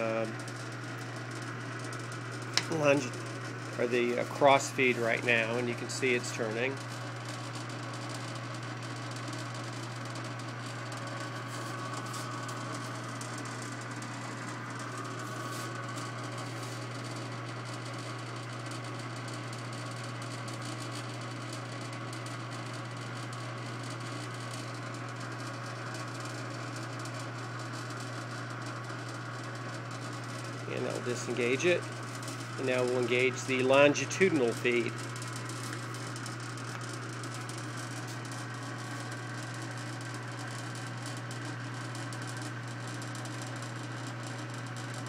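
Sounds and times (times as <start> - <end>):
metal lathe humming: 0.0 - 8.4, 10.2 - 18.4, 27.0 - 43.2.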